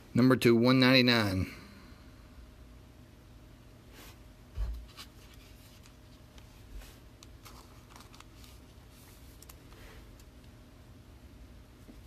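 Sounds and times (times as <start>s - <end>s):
cards sliding in plastic sleeves: 4.9s - 10.3s.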